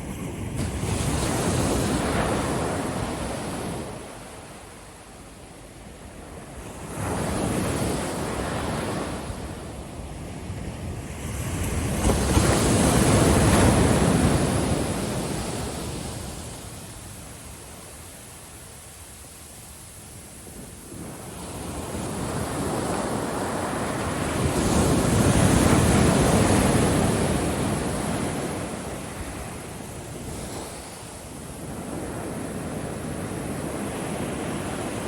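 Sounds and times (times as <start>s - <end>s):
ocean waves breaking on beach: 0.0s - 35.0s.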